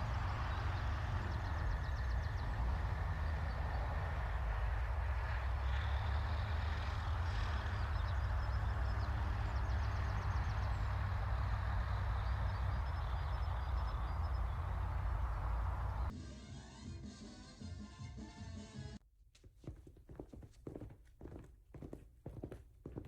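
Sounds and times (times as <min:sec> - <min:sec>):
low traffic rumble with hiss: 0:00.0 - 0:16.1.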